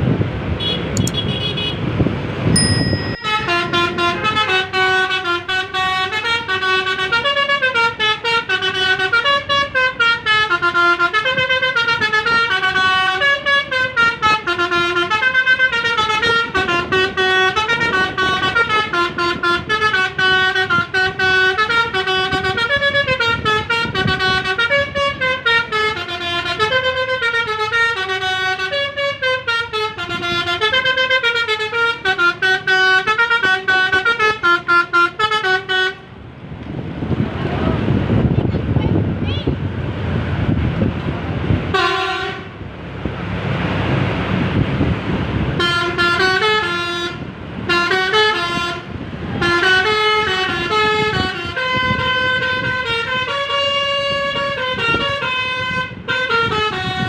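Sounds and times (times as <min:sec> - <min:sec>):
rumbling wind-like noise: 0:00.0 - 0:05.1, 0:21.9 - 0:25.7, 0:36.0 - 0:57.0
multi-tone bus horn melody: 0:00.5 - 0:36.3, 0:41.4 - 0:57.0.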